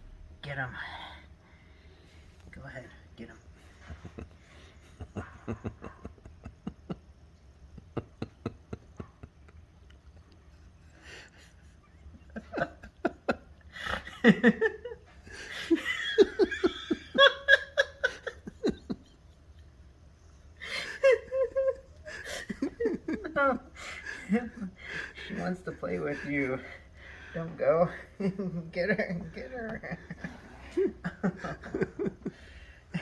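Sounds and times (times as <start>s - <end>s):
person laughing: 3.9s - 19.7s, 20.6s - 26.8s, 28.7s - 33.0s.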